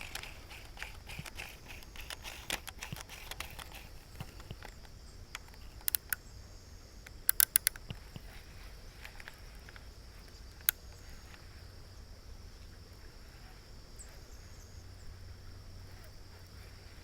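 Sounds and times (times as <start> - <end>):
sharp clicks: 0.0 - 6.2, 7.0 - 11.4
high insect drone: 0.0 - 17.0.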